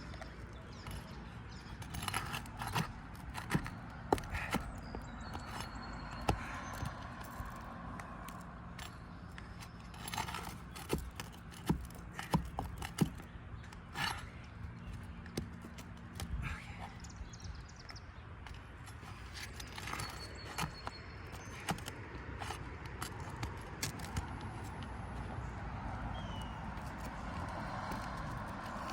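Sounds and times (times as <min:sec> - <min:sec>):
hand tool prying roofing nails: 0:01.7 - 0:07.6, 0:09.8 - 0:13.3, 0:19.6 - 0:24.1.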